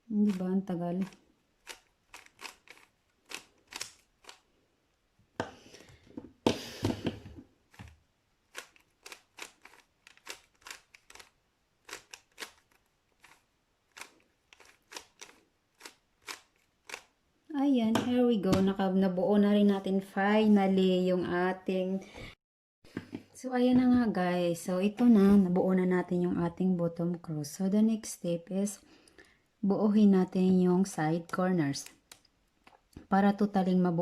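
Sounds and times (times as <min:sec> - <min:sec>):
puzzle cube clicking as turned: 0:00.2 - 0:04.5, 0:07.0 - 0:17.2.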